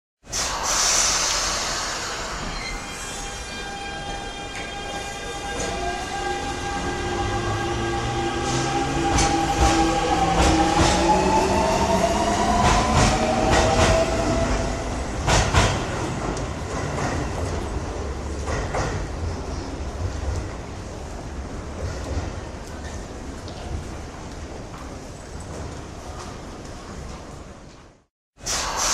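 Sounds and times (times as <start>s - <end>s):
air hiss: 0.3s - 3.1s, 28.4s - 28.9s
low train rumble: 0.3s - 28.9s.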